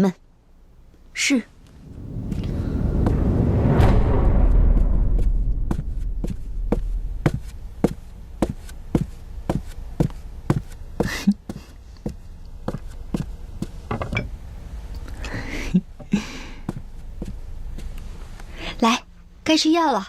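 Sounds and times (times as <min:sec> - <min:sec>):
hissing swells: 0:01.5 - 0:08.4.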